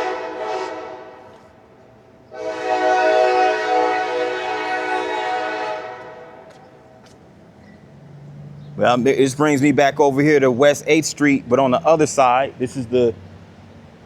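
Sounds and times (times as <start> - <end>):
locomotive air horn: 0.0 - 1.6, 2.3 - 6.5.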